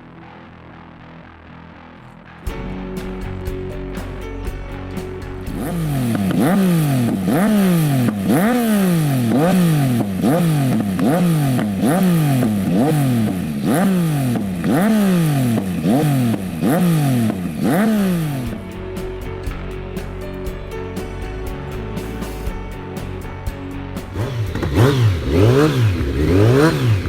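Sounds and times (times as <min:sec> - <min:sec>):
motorcycle engine revving: 0:04.9 - 0:19.6, 0:22.0 - 0:27.0.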